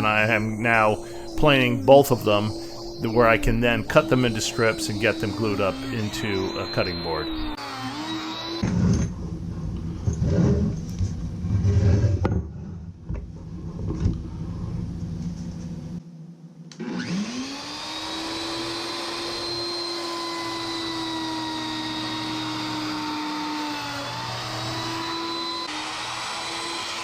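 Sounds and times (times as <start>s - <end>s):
router motor whining: 0.0s - 10.3s, 16.8s - 27.0s.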